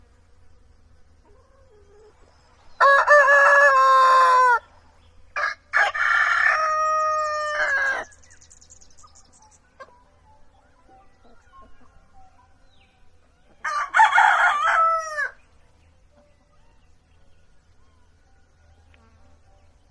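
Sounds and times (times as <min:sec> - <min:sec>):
rooster crowing: 0:02.7 - 0:04.7, 0:05.4 - 0:08.2, 0:13.5 - 0:15.4.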